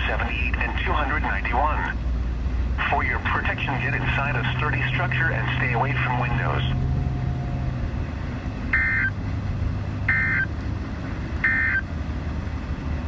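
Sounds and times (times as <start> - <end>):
radio hiss: 0.0 - 1.9, 2.8 - 6.7
low hum: 0.0 - 11.3.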